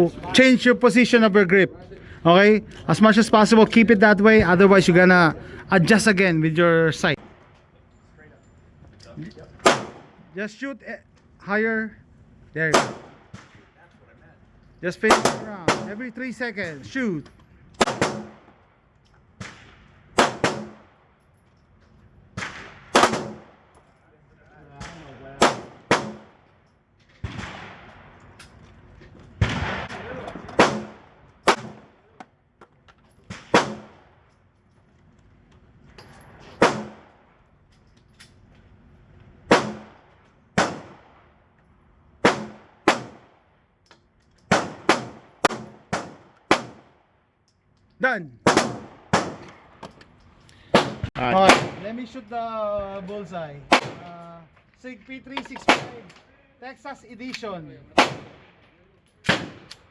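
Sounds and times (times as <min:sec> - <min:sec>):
pistol shots with ringing tail: 0:09.6 - 0:10.2, 0:12.7 - 0:13.6, 0:15.1 - 0:16.1, 0:17.8 - 0:18.8, 0:19.4 - 0:21.1, 0:22.4 - 0:23.7, 0:24.8 - 0:26.5, 0:29.4 - 0:32.2, 0:33.3 - 0:34.3, 0:36.3 - 0:37.3, 0:39.5 - 0:41.3, 0:42.2 - 0:43.5, 0:44.5 - 0:47.1, 0:48.4 - 0:49.8, 0:53.7 - 0:54.1, 0:55.6 - 0:56.2, 0:58.0 - 0:59.9.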